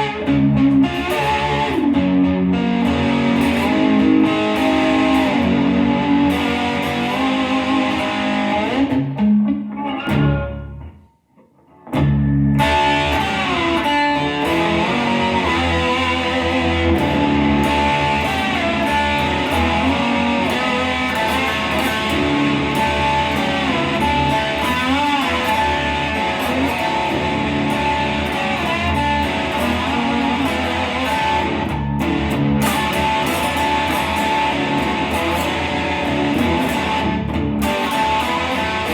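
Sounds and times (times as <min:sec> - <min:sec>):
slide guitar notes: 0:00.0 - 0:11.1, 0:11.8 - 0:38.9.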